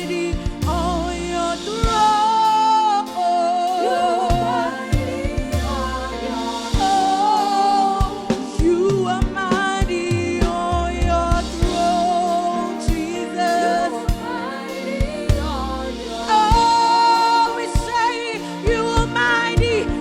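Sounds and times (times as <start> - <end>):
band playing: 0.0 - 20.0
voices singing gospel: 0.0 - 20.0
drum hits: 4.3 - 7.4, 8.0 - 13.3, 14.0 - 20.0.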